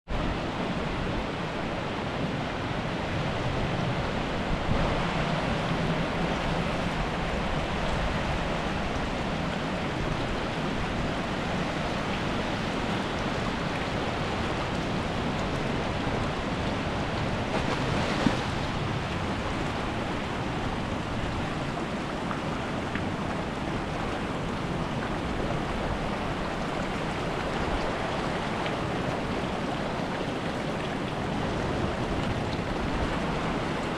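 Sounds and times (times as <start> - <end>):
waves washing onto shore: 0.1 - 33.9
sharp wave slap: 17.5 - 18.8.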